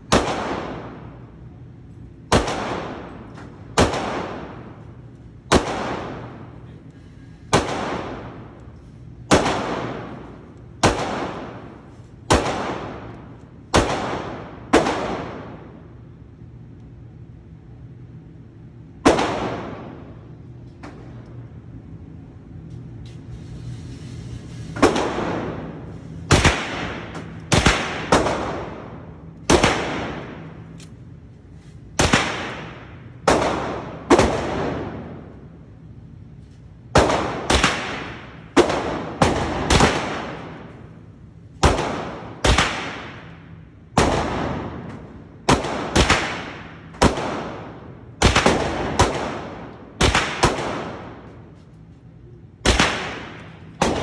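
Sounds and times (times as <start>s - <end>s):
pistol shots with echo: 0.0s - 1.5s, 2.2s - 6.7s, 7.5s - 16.0s, 19.0s - 21.2s, 24.8s - 30.8s, 31.9s - 35.5s, 37.0s - 51.6s, 52.6s - 54.0s.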